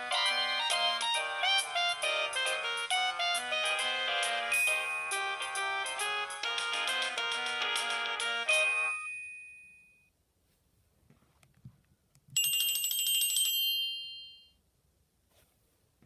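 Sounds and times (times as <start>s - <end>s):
ringtone chord ringing out: 0.0s - 10.1s
high-pitched chime: 3.7s - 10.1s.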